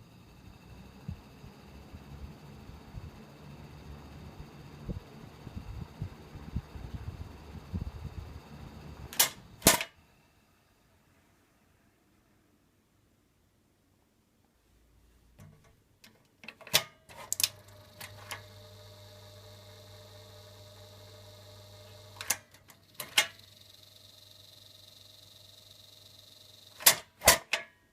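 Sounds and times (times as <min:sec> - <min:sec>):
ventilation fan motor humming: 0:00.0 - 0:10.9, 0:17.3 - 0:27.0.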